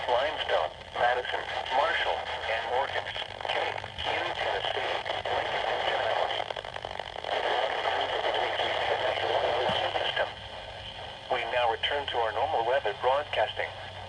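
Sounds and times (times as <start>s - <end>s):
radio static hiss: 0.0s - 14.0s.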